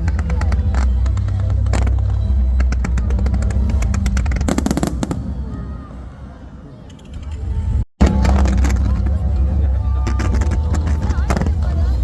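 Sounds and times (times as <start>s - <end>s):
fireworks crackling pops: 0.0s - 5.6s, 6.9s - 9.4s, 10.0s - 12.0s
fireworks booming: 0.2s - 6.8s.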